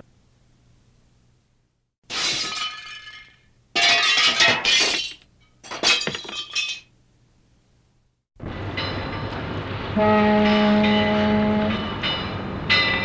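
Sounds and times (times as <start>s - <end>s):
glass shards clinking: 2.1s - 6.9s
glass shattering: 2.1s - 6.9s.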